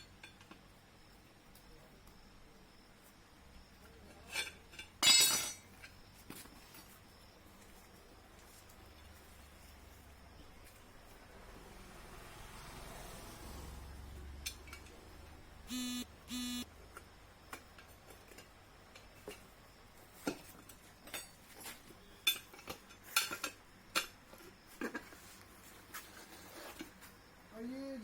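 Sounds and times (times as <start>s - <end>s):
metal tools clinking on wheel: 4.2s - 6.0s
short buzzy beeps: 15.7s - 16.6s.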